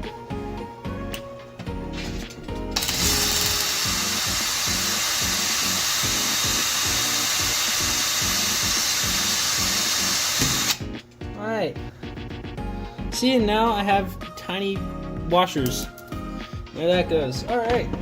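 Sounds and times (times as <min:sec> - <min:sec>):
background music: 0:00.0 - 0:18.0
electric drill high whine: 0:02.8 - 0:10.8.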